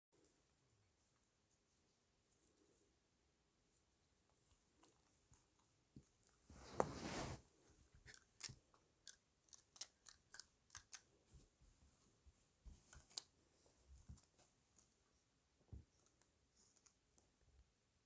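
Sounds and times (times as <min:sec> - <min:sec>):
puppy crunching bone: 0:08.0 - 0:11.1.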